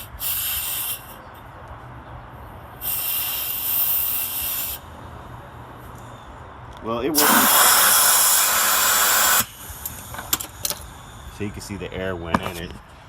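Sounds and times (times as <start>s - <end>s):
air leaking around hose: 0.0s - 1.2s, 2.8s - 4.9s, 7.2s - 11.4s
compressed air hissing: 0.0s - 1.3s, 2.7s - 5.0s, 7.1s - 11.7s.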